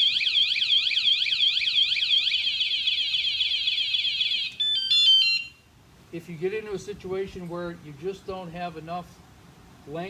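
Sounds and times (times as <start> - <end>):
alarm siren whooping: 0.0 - 5.6.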